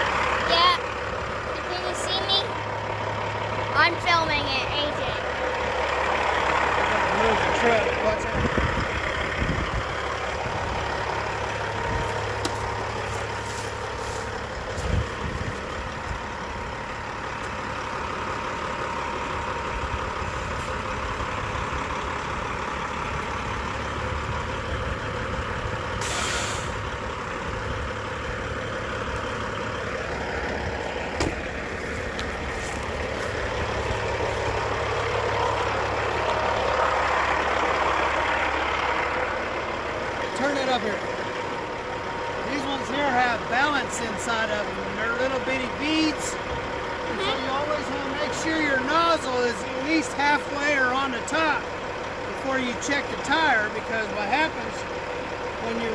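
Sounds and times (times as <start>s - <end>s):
diesel truck engine running: 0.0s - 55.9s
air hissing burst: 26.0s - 26.8s.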